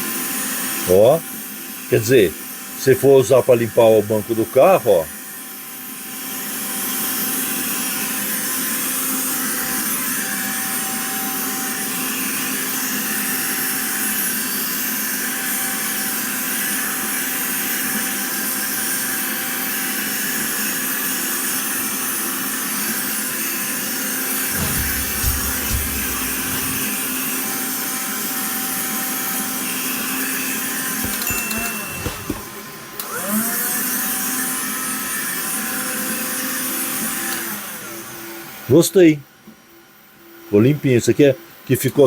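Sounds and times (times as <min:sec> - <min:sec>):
low bumps: 0:24.5 - 0:27.2
handheld vacuum whine: 0:24.5 - 0:27.4, 0:30.6 - 0:38.5.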